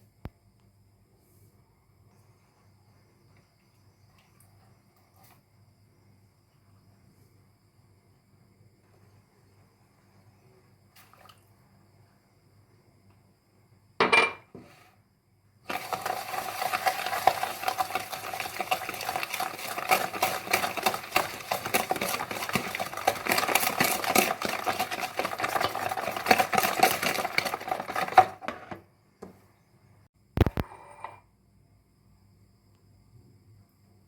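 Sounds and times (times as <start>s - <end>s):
utensil stirring in mixing bowl: 15.7s - 28.8s.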